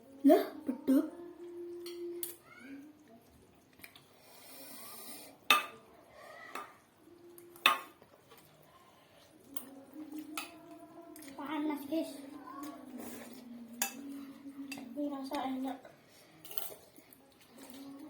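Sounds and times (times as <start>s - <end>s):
utensils clinking against a bowl: 1.7s - 2.5s, 7.4s - 8.5s, 9.4s - 11.5s, 12.6s - 18.0s.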